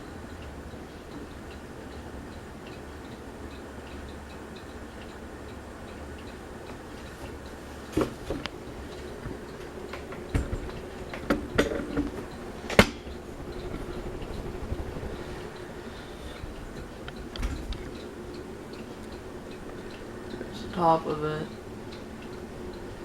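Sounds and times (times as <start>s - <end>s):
ceiling fan humming and ticking: 0.0s - 23.0s
sharp clicks and knocks: 6.7s - 15.2s, 16.7s - 19.2s.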